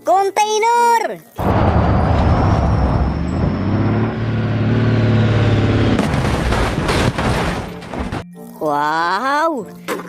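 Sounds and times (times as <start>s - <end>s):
heavy vehicle engine droning: 1.4s - 8.2s.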